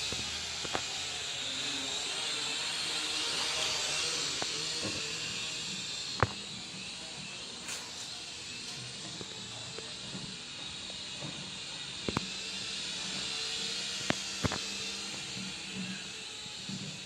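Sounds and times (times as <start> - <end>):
toy quadcopter motors hissing: 0.0 - 17.0.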